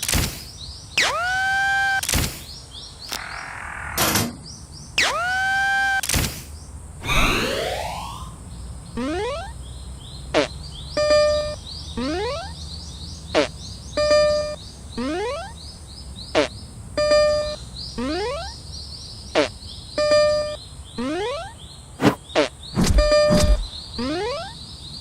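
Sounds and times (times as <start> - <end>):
electronic warning sweep and buzz: 1.0 - 2.0, 5.0 - 6.0, 7.0 - 8.4, 22.8 - 24.6.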